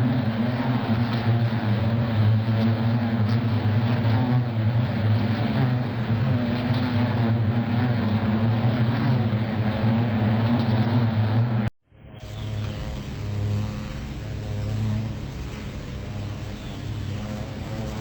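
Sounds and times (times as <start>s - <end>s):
bees buzzing: 12.2s - 18.0s.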